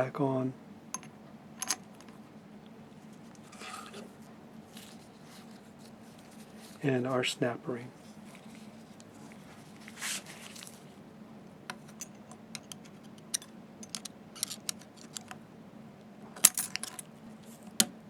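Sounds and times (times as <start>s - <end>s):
faint steady hum: 0.0s - 18.0s
metal clicks and scrapes: 11.7s - 15.4s.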